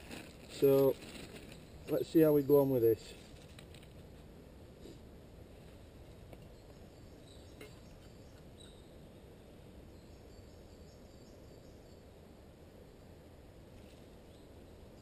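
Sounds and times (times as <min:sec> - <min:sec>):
distant birdsong: 0:06.0 - 0:13.3.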